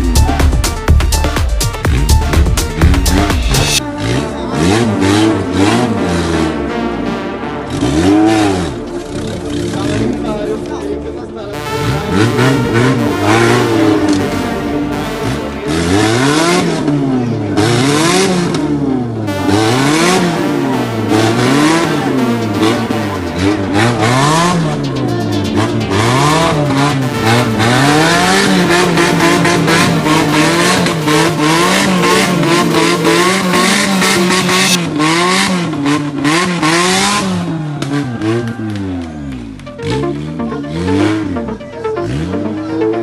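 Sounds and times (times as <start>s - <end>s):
vehicle engine revving: 1.8s - 43.0s.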